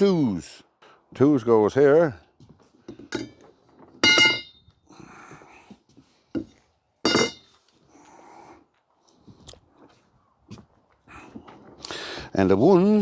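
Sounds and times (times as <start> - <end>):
metal pipes clinking: 3.0 - 4.6, 7.1 - 7.6.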